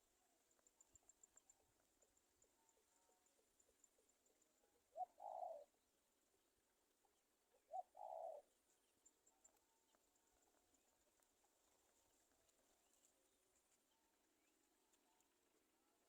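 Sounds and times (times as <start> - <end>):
low cooing bird calls: 2.7 - 5.8, 7.1 - 8.6.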